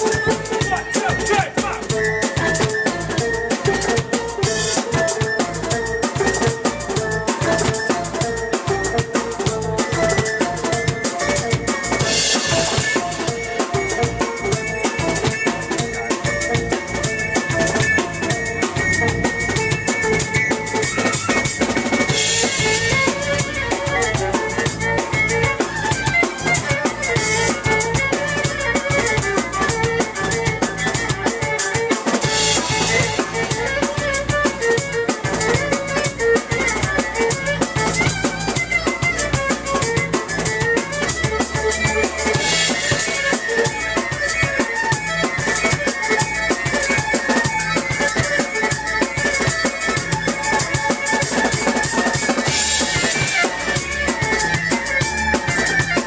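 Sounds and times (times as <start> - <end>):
drum kit beat: 0.0 - 56.0
electric violin: 0.0 - 56.0
keyboard: 0.0 - 56.0.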